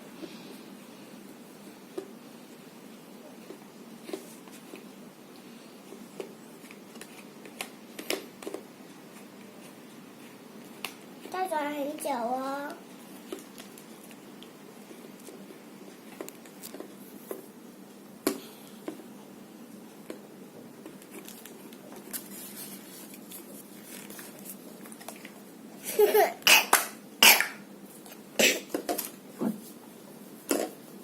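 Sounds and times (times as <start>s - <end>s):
child coughing: 25.9s - 27.6s, 28.4s - 28.8s.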